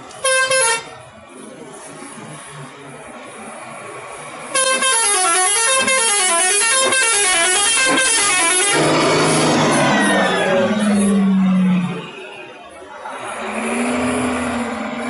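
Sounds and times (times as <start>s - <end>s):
multi-tone musical bus horn: 0.1s - 1.0s, 4.5s - 9.5s
loud rush of noise: 8.7s - 15.0s.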